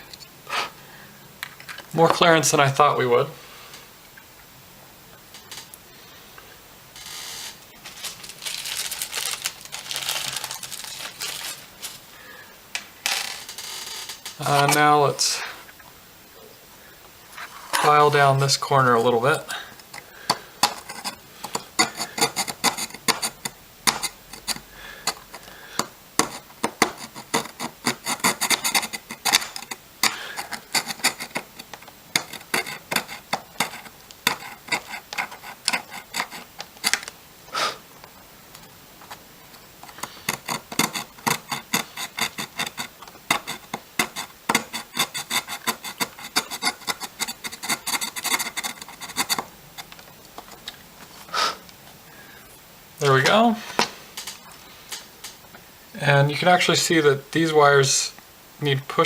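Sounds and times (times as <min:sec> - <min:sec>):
nail file rasping: 0:20.6 - 0:25.5, 0:26.2 - 0:37.0, 0:39.8 - 0:50.0.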